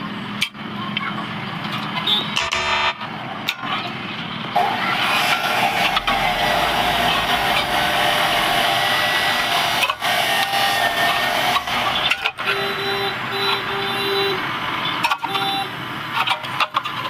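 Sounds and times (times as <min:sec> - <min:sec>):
harsh hissing metal cutting: 0:04.6 - 0:12.5.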